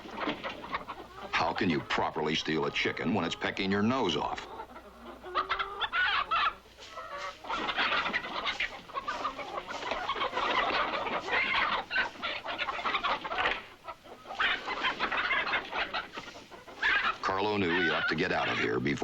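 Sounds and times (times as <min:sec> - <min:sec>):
chickens squawking and cackling: 0:00.0 - 0:19.0.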